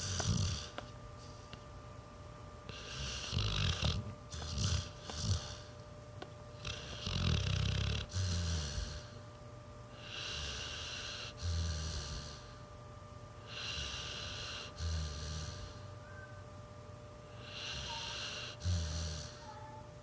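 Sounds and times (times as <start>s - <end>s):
dog breathing and snoring: 0.0s - 1.6s, 2.6s - 5.9s, 6.5s - 9.3s, 9.9s - 12.8s, 13.4s - 16.0s, 17.2s - 19.8s.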